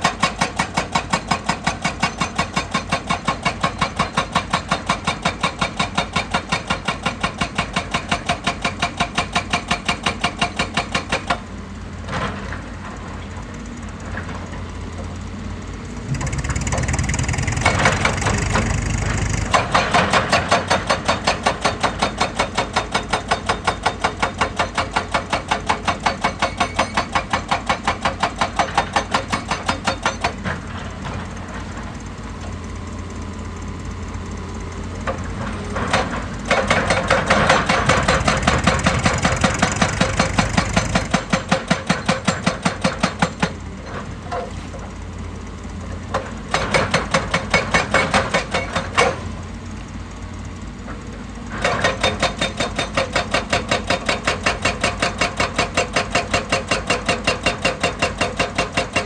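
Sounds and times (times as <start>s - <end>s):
heavy diesel machinery running: 0.0s - 59.0s
rapid even hammering: 16.1s - 20.0s.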